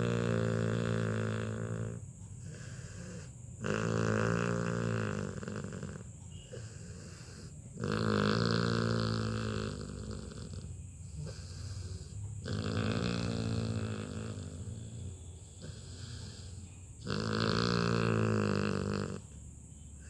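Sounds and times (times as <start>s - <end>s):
puppy snoring loudly: 0.0s - 20.0s.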